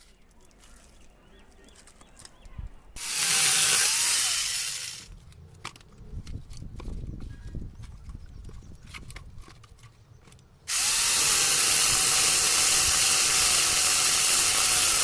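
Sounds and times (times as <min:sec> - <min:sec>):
angle grinder cutting wood: 0:03.0 - 0:05.1, 0:10.7 - 0:15.0.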